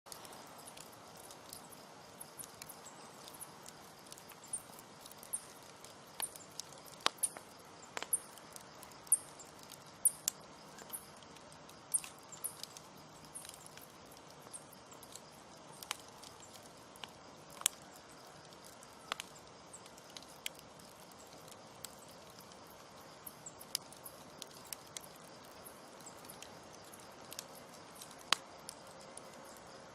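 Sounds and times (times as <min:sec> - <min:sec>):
campfire crackling and popping: 0:00.1 - 0:29.9
hiss of flames: 0:00.1 - 0:29.9
faint high chirping: 0:00.2 - 0:11.2.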